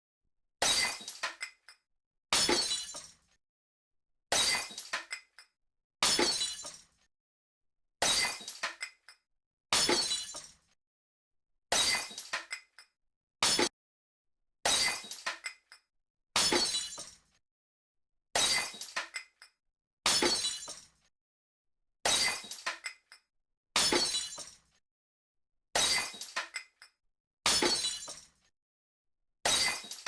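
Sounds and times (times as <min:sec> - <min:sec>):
glass smashing: 0:00.6 - 0:01.3, 0:02.4 - 0:03.1, 0:04.3 - 0:05.0, 0:06.0 - 0:06.8, 0:08.0 - 0:08.7, 0:09.8 - 0:10.5, 0:11.7 - 0:12.4, 0:14.7 - 0:15.3, 0:16.4 - 0:17.2, 0:18.4 - 0:19.0, 0:20.1 - 0:20.9, 0:22.1 - 0:22.7, 0:23.8 - 0:24.6, 0:25.8 - 0:26.6, 0:27.5 - 0:28.3, 0:29.5 - 0:30.0.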